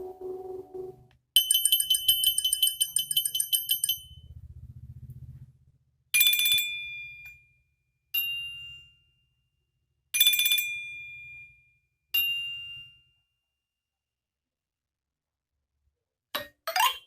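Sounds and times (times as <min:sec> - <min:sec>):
bell-like ringtone chimes: 0:12.2 - 0:13.3.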